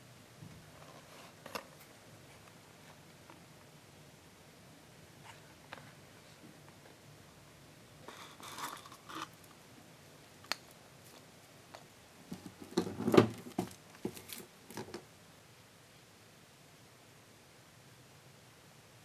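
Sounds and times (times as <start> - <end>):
packaging rustling: 8.1 - 9.5.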